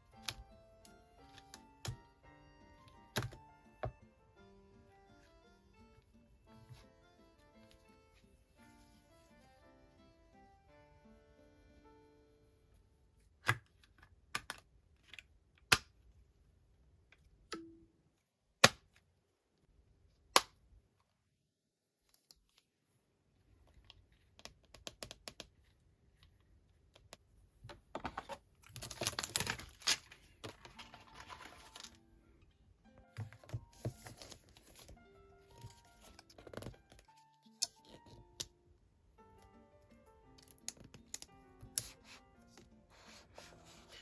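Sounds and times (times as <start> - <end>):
packaging rustling and crinkling: 28.6 - 32.0.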